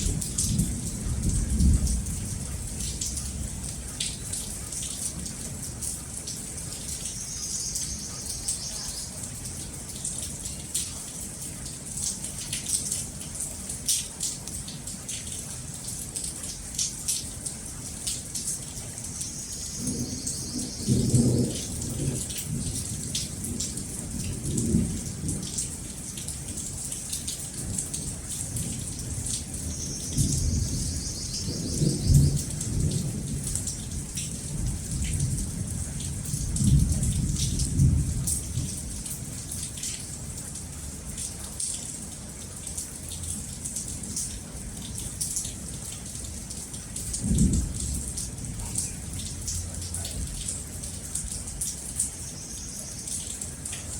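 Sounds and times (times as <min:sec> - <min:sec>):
low rolls of thunder: 0:00.0 - 0:03.6, 0:19.8 - 0:25.7, 0:30.1 - 0:39.4, 0:47.0 - 0:50.5
rain hissing: 0:00.0 - 0:53.9.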